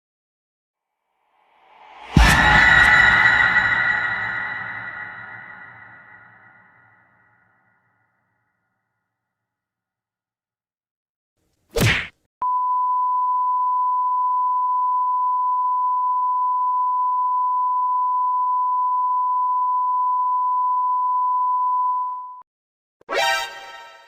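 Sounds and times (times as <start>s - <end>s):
long steady censor beep: 12.4s - 22.4s.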